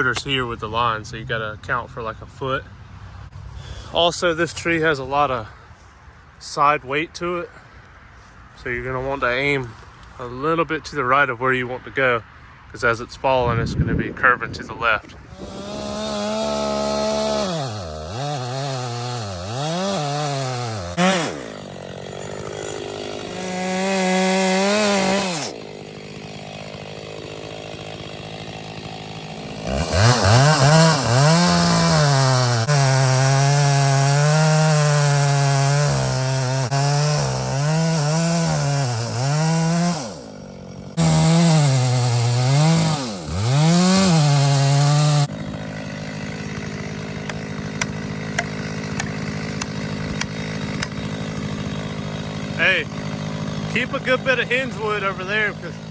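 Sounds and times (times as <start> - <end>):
chainsaw cutting tree trunk: 15.2 - 55.9.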